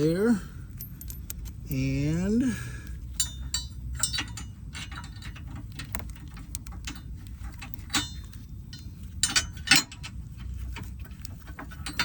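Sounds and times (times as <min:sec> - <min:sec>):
metal bolts clicking and clinking: 0:00.7 - 0:02.2, 0:03.1 - 0:10.2, 0:11.5 - 0:12.0.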